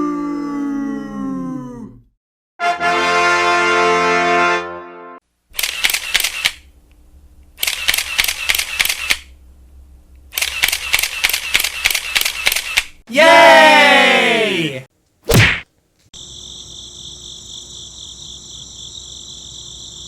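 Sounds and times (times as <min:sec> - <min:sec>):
sustained brass note: 0:02.6 - 0:05.2
camera shutter clicking: 0:05.6 - 0:06.7, 0:07.6 - 0:09.3, 0:10.3 - 0:13.0.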